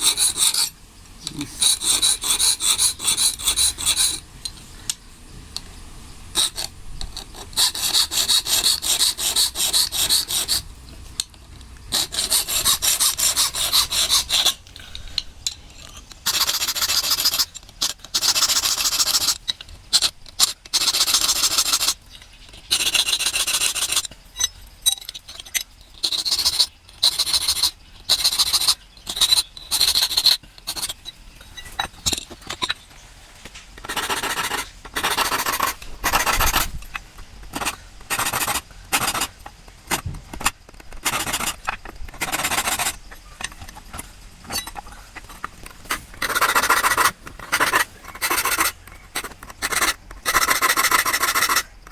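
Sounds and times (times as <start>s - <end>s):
hand file rasping on steel blade: 0.0s - 0.7s, 1.6s - 4.2s, 6.4s - 10.7s, 11.9s - 14.6s, 16.3s - 22.0s, 22.7s - 24.1s, 26.0s - 31.0s, 33.8s - 36.8s, 46.2s - 51.7s.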